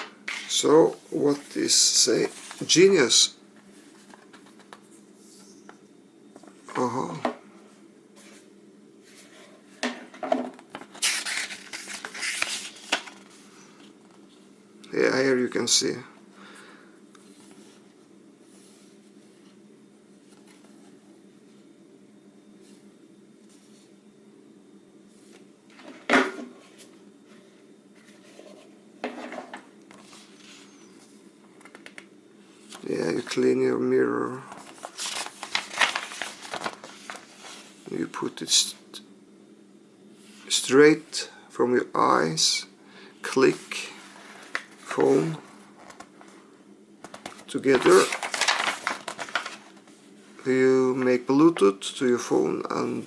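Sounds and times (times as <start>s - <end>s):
low steady hum: 0.0s - 53.0s
packaging rustling: 10.7s - 14.3s, 34.5s - 37.7s, 47.0s - 50.0s.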